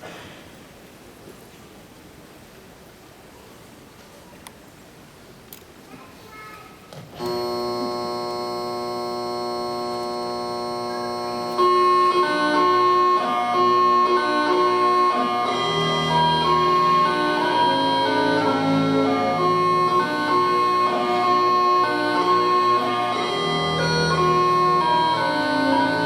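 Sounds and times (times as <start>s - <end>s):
bagpipe chanter tune: 7.2s - 26.0s
bagpipe drone chord: 7.2s - 26.0s.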